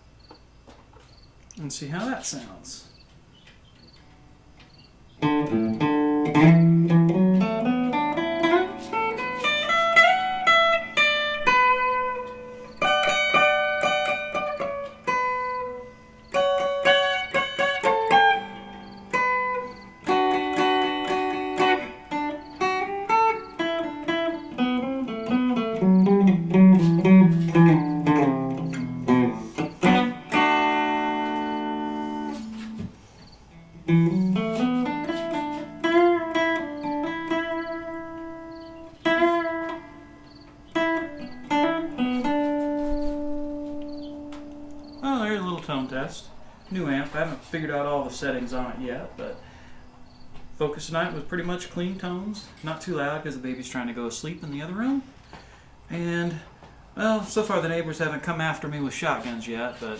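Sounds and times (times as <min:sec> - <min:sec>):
clean electric guitar arpeggios: 0:05.2 - 0:32.8, 0:33.6 - 0:45.0.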